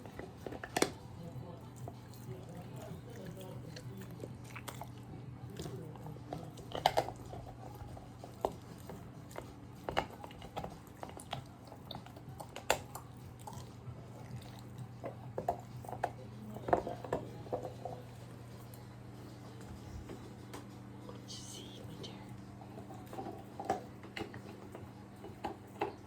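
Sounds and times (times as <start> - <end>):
teeth crunching on toy: 0.0 - 18.8
dog chewing wetly: 0.0 - 21.2, 22.2 - 26.0.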